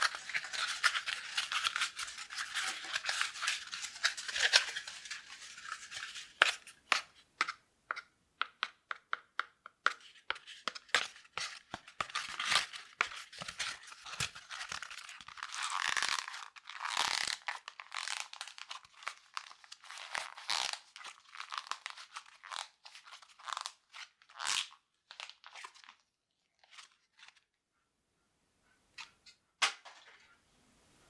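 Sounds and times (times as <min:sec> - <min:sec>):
cardboard tube crackling and crunching: 0:00.0 - 0:07.1, 0:10.9 - 0:22.8.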